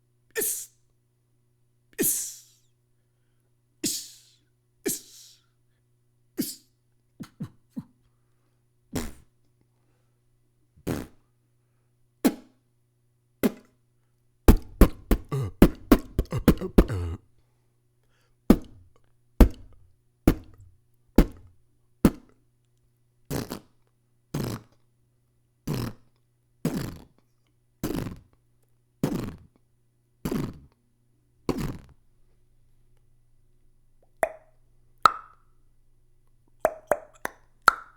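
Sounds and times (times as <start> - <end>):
beatboxing drum hits: 14.5 - 17.2, 19.4 - 20.6.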